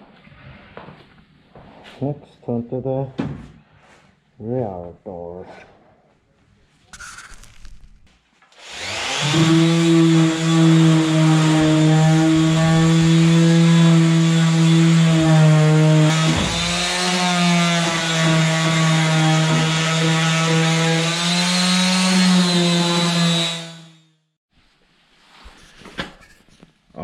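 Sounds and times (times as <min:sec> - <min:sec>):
electric power tool whining: 0:08.6 - 0:24.0.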